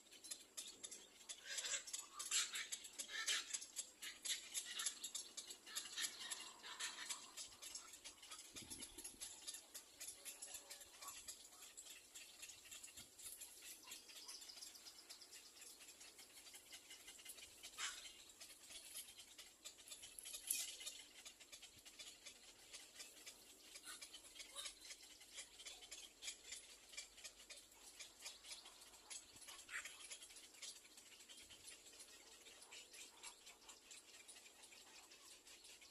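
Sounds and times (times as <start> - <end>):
fine rapid ticking: 0.0 - 32.1
bird chicks high-pitched calls: 0.0 - 35.9.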